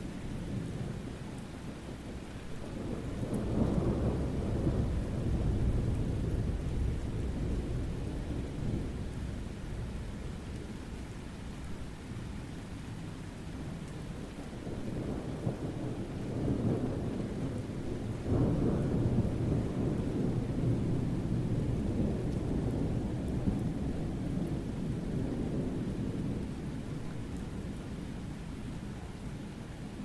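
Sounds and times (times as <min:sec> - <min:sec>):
steady rain: 0:00.0 - 0:30.0
low thunder rumble: 0:02.0 - 0:11.0, 0:14.6 - 0:29.2.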